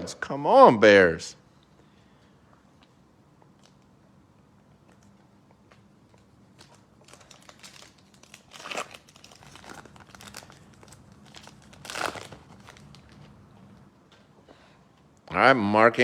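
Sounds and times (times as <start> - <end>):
foil wrapper crinkling: 6.1 - 13.4
wrapper ripping: 6.5 - 13.3.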